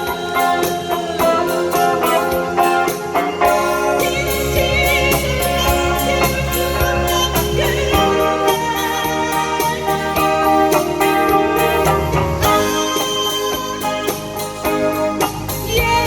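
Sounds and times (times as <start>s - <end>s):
pop music with guitar and keyboard: 0.0s - 16.0s
wavering lead melody: 0.0s - 16.0s
deep bass line: 2.4s - 12.9s.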